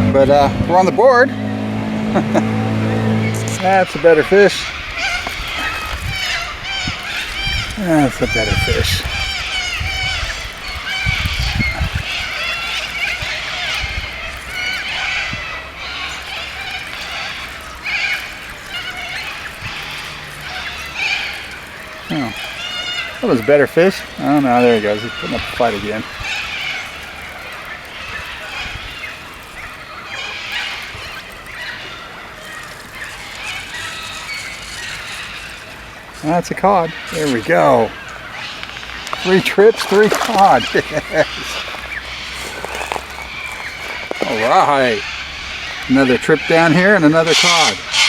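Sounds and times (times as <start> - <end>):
low steady hum: 0.0 - 6.2
birds calling: 0.0 - 48.0
outdoor background noise: 0.0 - 48.0.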